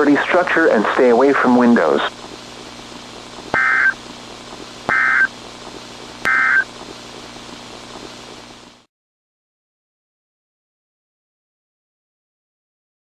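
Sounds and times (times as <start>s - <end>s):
faint low hum: 0.0s - 8.8s
steady hiss: 0.3s - 8.8s
digital data tone bursts: 3.5s - 4.0s, 4.9s - 5.4s, 6.3s - 6.7s.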